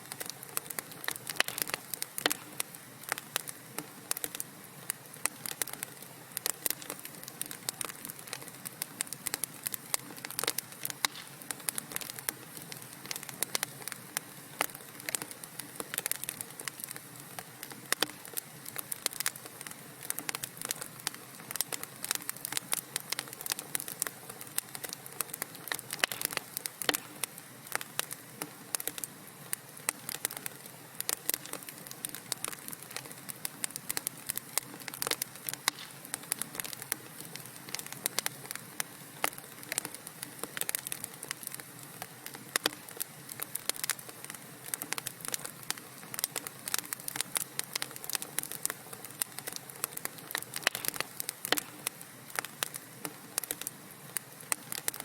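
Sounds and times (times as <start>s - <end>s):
soft steady hiss: 0.0s - 55.0s
wood fire crackling: 0.0s - 55.0s.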